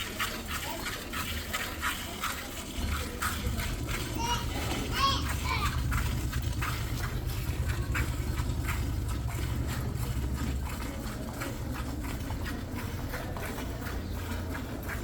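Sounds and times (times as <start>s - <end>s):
milk squirting into a pail: 0.0s - 15.0s
steady low rumble: 3.3s - 14.8s.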